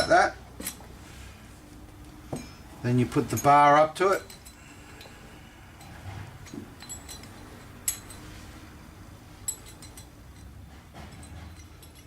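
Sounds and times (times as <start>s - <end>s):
metal parts clinking: 5.8s - 8.3s, 9.4s - 12.0s.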